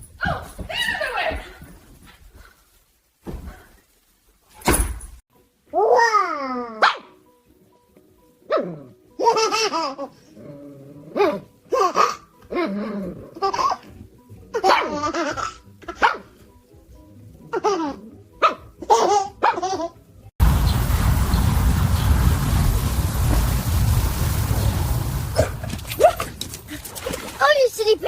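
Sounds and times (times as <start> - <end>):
steady rushing noise: 20.4 - 25.9.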